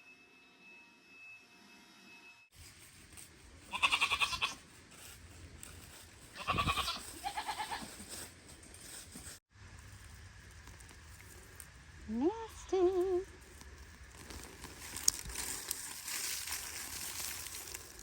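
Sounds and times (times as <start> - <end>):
goats bleating: 3.7 - 4.6, 6.4 - 7.9.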